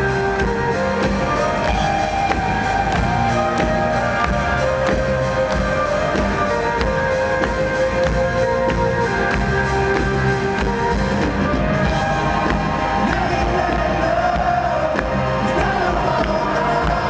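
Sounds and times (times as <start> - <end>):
live rock band playing: 0.0 - 17.0
person singing: 11.5 - 17.0.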